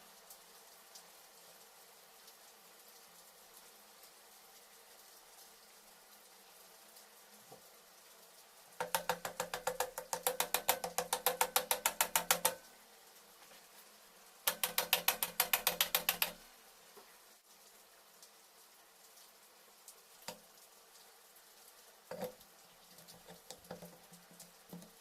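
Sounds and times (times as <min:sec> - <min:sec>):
rapid mechanical clicking: 0:08.8 - 0:12.6, 0:14.5 - 0:16.4.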